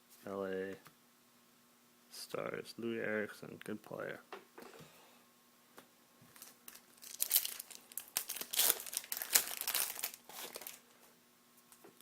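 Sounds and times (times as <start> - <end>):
foil wrapper crinkling and tearing: 6.3 - 10.9.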